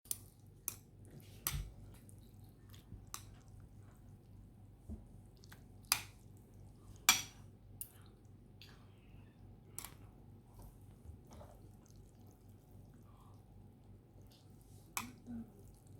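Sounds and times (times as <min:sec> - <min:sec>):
wet chewing and slurping: 0:11.3 - 0:13.5.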